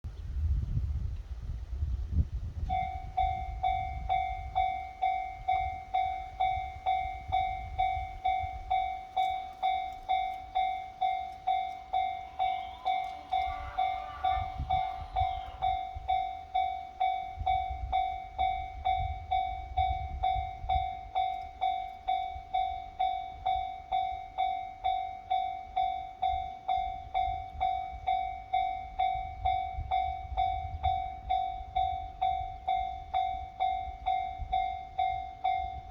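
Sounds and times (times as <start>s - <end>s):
level crossing warning bell: 2.6s - 35.9s
wavering pitch sound: 11.9s - 16.1s
low rumble: 11.9s - 16.2s.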